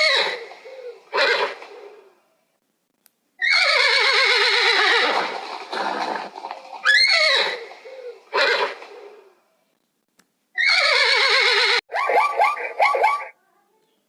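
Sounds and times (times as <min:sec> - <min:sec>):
animal calls: 0:03.4 - 0:09.3, 0:10.6 - 0:13.4
long quavering animal call: 0:06.8 - 0:09.3
rough breathy animal sound: 0:07.5 - 0:09.4.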